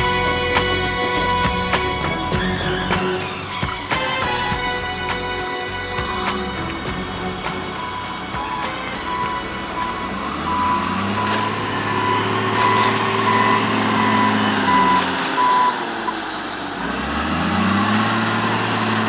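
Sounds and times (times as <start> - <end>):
truck backup alarm beeping: 0.0 - 19.0
truck engine running: 0.0 - 19.0.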